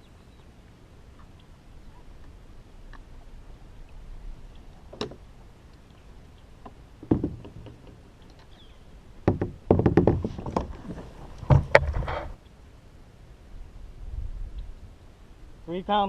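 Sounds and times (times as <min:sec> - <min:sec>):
sharp knocks and dull thuds: 0:06.6 - 0:08.2, 0:09.2 - 0:12.4.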